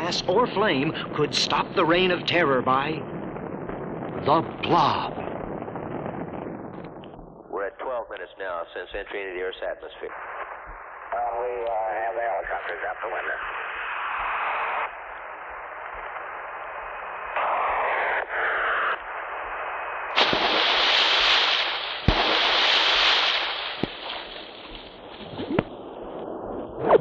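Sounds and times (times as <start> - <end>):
radio-like static hiss: 0.0 - 3.1, 4.0 - 5.2, 7.5 - 27.0
sharp cracks: 3.0 - 7.4, 14.1 - 27.0
loud hissing rush: 3.9 - 6.0, 15.7 - 26.0.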